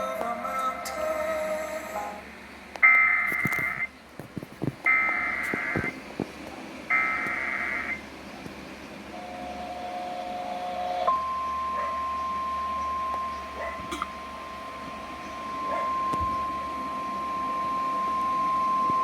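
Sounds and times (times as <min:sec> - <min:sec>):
lower double tone: 0:09.2 - 0:19.0.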